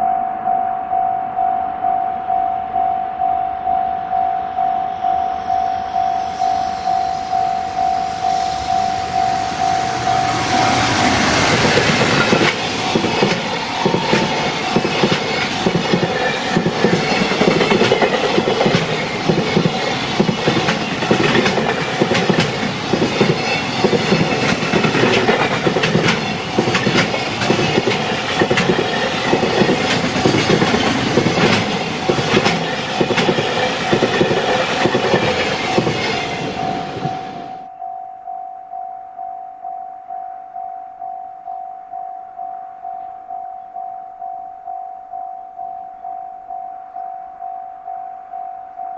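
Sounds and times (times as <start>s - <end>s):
level-crossing bell ringing: 0.0s - 21.7s, 22.5s - 28.4s, 29.0s - 48.9s
train wheels clattering: 6.4s - 37.6s.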